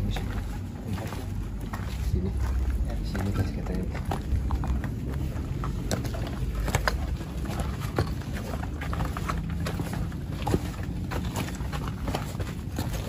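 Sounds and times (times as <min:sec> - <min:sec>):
footsteps: 0:00.0 - 0:13.0
low rumble on microphone: 0:00.0 - 0:13.0
rustling: 0:00.0 - 0:13.0.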